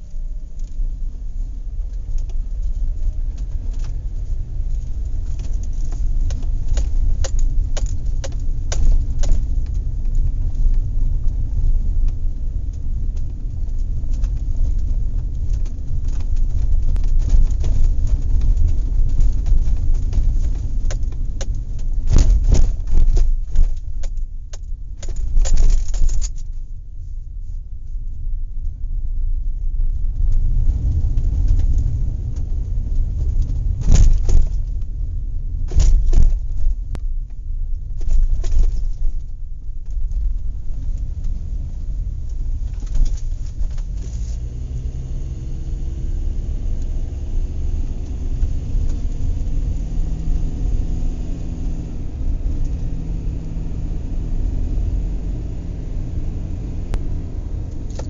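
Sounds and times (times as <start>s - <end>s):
steady low rumble: 0.0s - 58.0s.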